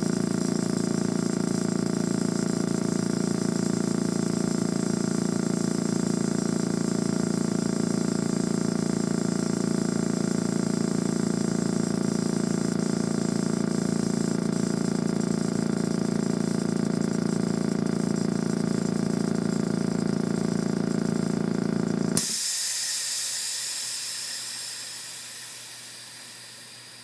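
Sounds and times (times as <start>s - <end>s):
air compressor humming: 0.0s - 27.0s
compressed air hissing: 22.2s - 27.0s.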